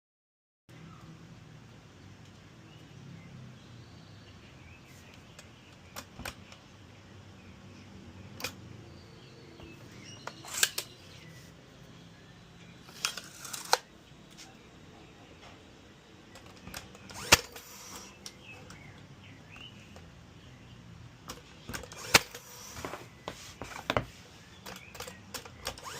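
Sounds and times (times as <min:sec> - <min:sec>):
sharp clicks and knocks: 0:05.1 - 0:06.7, 0:16.3 - 0:20.1, 0:21.2 - 0:25.9.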